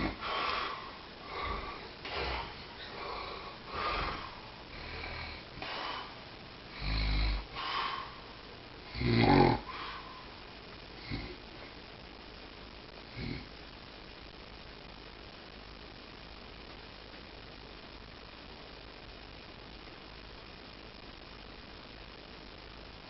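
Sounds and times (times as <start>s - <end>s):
dog snoring: 6.7s - 7.6s, 8.9s - 9.7s.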